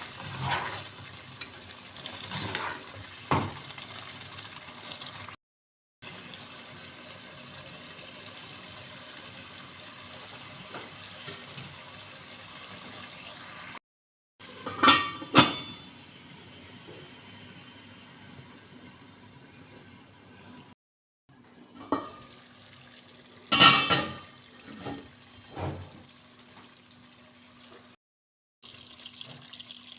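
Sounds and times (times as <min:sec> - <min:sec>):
food hissing in a pot: 0:11.8 - 0:13.8.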